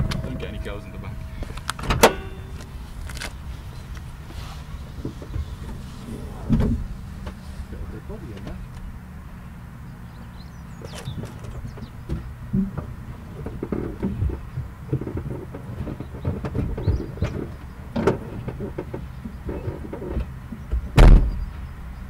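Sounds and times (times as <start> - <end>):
low steady hum: 0.0 - 18.7
loud thud: 21.0 - 21.4.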